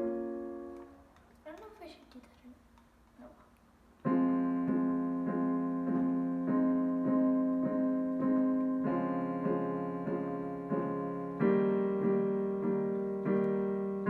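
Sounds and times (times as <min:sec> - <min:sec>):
piano repeated notes: 0:00.0 - 0:01.2, 0:04.0 - 0:14.0.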